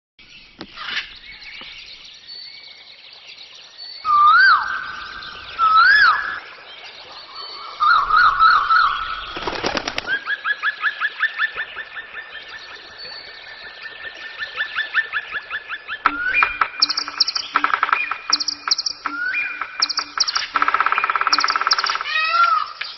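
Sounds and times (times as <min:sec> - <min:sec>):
bird whistling and chirping: 0:04.0 - 0:06.4, 0:07.8 - 0:10.8, 0:14.5 - 0:22.9.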